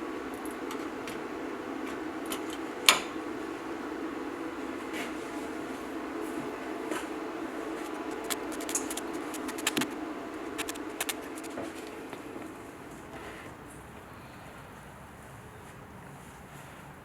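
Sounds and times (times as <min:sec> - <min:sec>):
steady hum: 0:00.0 - 0:16.0
sharp clicks and taps: 0:07.8 - 0:11.6.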